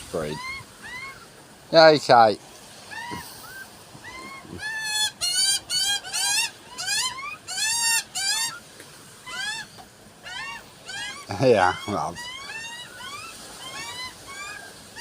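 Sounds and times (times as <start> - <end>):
bird calling in short bursts: 2.9 - 8.6, 9.2 - 15.0.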